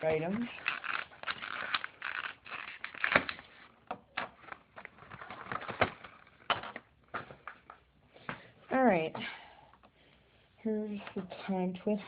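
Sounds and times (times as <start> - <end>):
plastic packaging clicks and crinkles: 0.0 - 7.9
plastic packaging snaps: 0.3 - 3.5.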